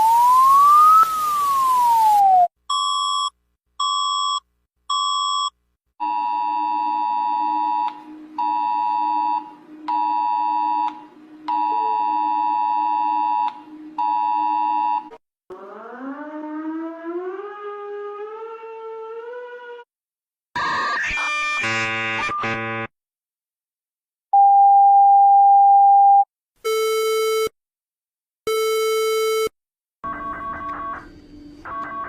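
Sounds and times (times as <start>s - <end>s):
siren-like tone rising in steps: 0.0s - 2.5s, 15.5s - 19.9s.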